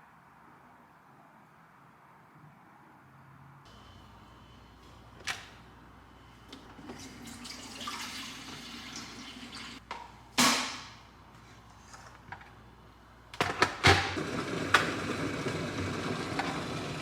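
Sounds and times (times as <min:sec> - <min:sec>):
water running from a tap: 0:06.9 - 0:09.8.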